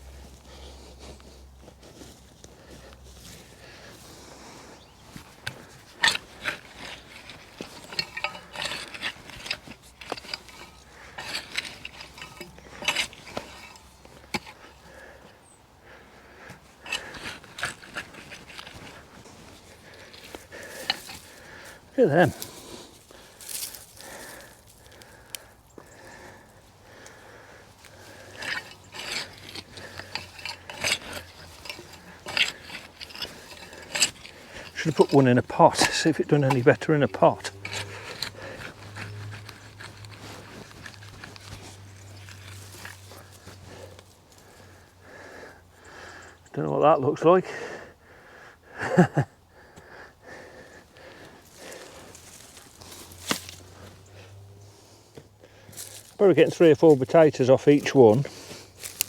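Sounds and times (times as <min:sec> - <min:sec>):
garden fork digging into soil: 0:05.0 - 0:15.4, 0:16.5 - 0:25.4, 0:27.8 - 0:44.8, 0:51.1 - 0:59.0.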